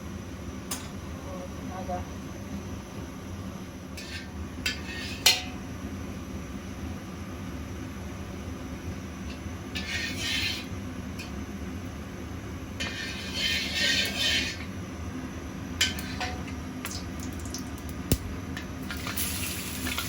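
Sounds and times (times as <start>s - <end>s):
steady low hum: 0.0s - 20.0s
pots and utensils clinking: 15.8s - 17.0s
cooking hiss: 15.8s - 20.0s.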